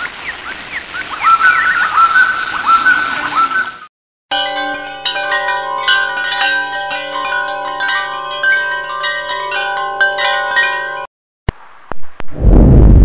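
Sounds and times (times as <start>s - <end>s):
metal chimes ringing: 4.3s - 11.1s.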